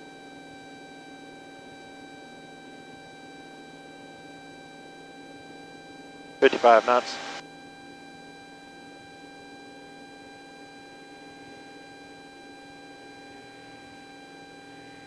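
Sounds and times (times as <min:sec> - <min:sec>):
electrical hum: 0:06.4 - 0:07.4
thin high whine: 0:06.4 - 0:07.4.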